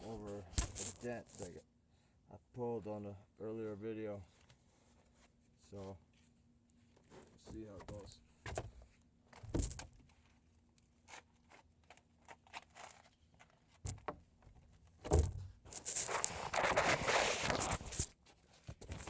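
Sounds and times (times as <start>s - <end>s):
scratchy rubbing noise: 15.7s - 18.1s.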